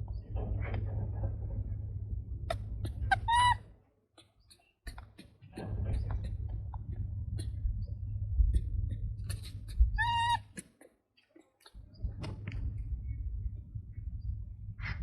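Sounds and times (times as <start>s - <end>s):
low rumble: 0.0s - 3.7s, 5.6s - 10.4s, 11.8s - 15.0s
monkey squealing: 2.5s - 3.6s, 9.3s - 10.8s.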